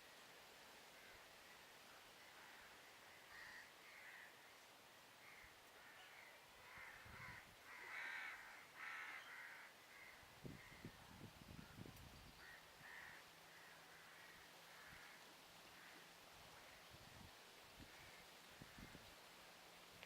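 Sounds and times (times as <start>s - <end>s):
crows cawing: 2.3s - 4.5s, 5.2s - 11.0s, 12.4s - 16.8s, 17.8s - 19.0s.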